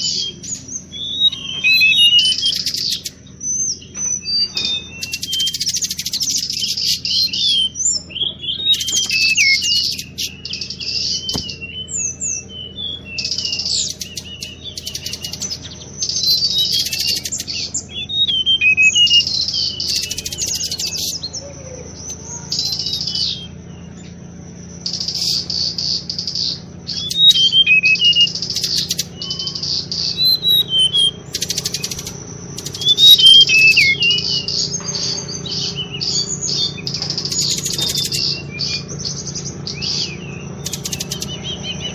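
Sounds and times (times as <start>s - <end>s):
recorded birdsong chirps and whistles: 0.0s - 41.9s.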